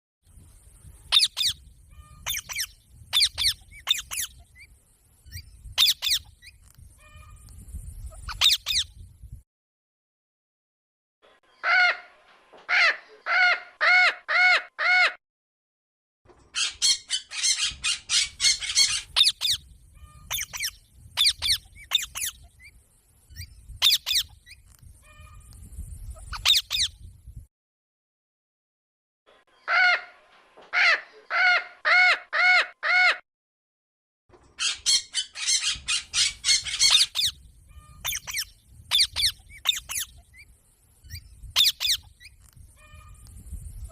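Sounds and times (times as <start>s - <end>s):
parrot chirping and squawking: 1.1s - 4.7s, 5.3s - 7.4s, 8.1s - 8.9s, 12.7s - 15.2s, 16.5s - 22.7s, 23.3s - 25.5s, 26.1s - 27.0s, 34.6s - 40.5s, 41.1s - 43.2s.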